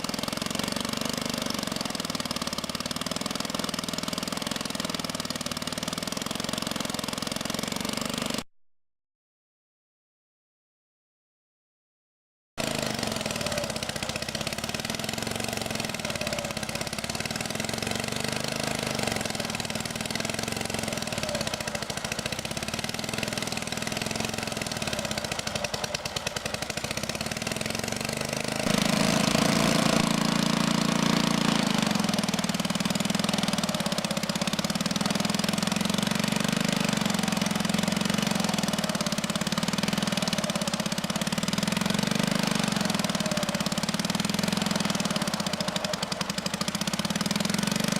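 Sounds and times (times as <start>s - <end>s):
sawmill engine running: 0.0s - 8.5s, 12.6s - 47.9s.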